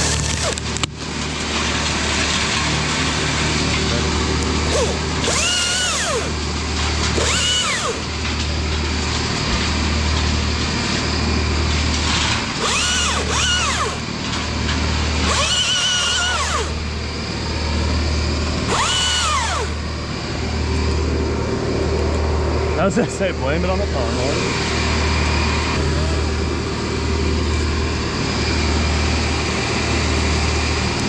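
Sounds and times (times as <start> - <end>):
chainsaw revving: 4.6 - 6.4, 7.0 - 8.1, 12.6 - 14.1, 15.1 - 16.9, 18.6 - 19.8.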